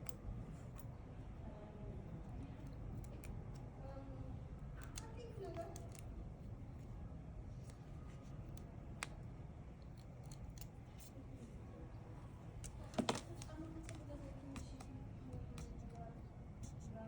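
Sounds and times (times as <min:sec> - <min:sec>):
small tools clicking on phone parts: 0:00.0 - 0:00.9, 0:02.4 - 0:03.7, 0:04.6 - 0:06.2, 0:08.5 - 0:11.2, 0:12.6 - 0:16.9
low steady hum: 0:00.0 - 0:17.0.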